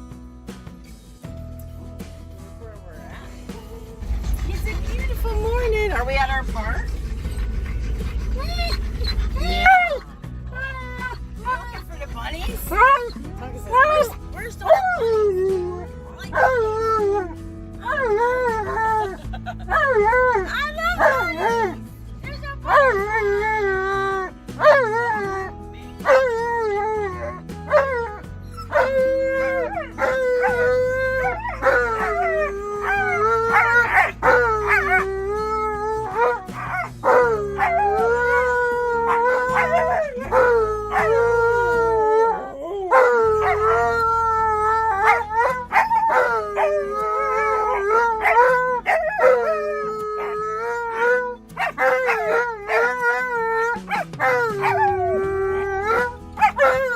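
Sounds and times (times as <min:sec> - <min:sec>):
background music: 0:00.0 - 0:56.9
dog howling: 0:05.1 - 0:11.9, 0:22.7 - 0:56.9.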